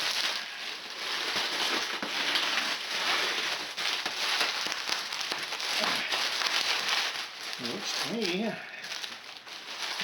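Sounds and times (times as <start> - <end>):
cardboard and packing crinkling: 0.0 - 10.0.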